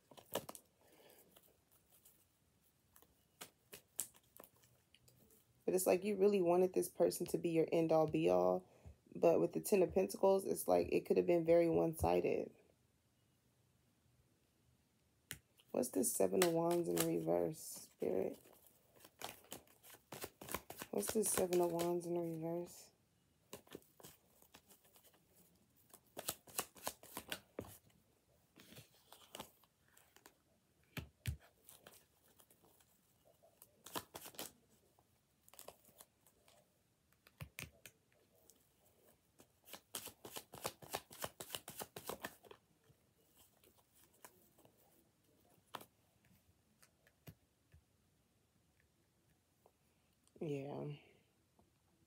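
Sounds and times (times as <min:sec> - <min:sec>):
cards being shuffled: 0:00.0 - 0:02.2, 0:02.9 - 0:05.3, 0:15.3 - 0:22.4, 0:23.5 - 0:27.9, 0:28.6 - 0:34.7, 0:35.4 - 0:36.6, 0:37.2 - 0:38.6, 0:39.3 - 0:42.6.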